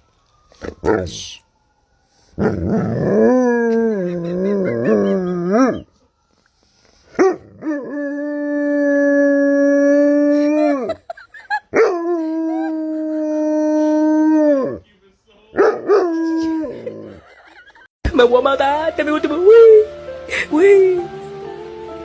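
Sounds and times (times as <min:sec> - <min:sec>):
dog howling: 0:02.4 - 0:05.9, 0:11.7 - 0:14.8.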